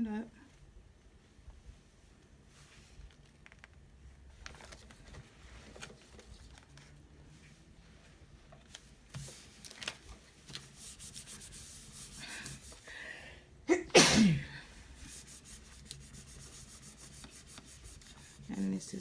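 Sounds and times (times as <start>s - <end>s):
vinyl rubbed on glass: 10.6s - 12.9s, 15.0s - 19.0s.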